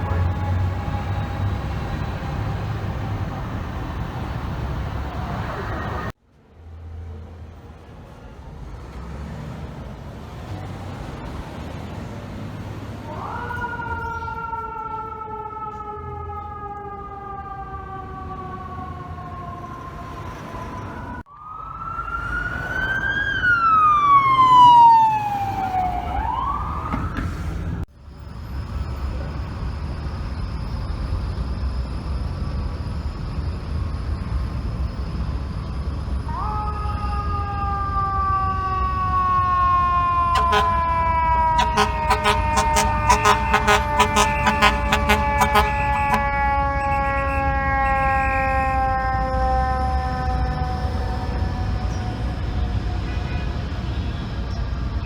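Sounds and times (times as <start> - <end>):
fire truck siren wailing: 0.0 - 6.2, 10.2 - 55.0
short horn blasts: 40.4 - 48.8.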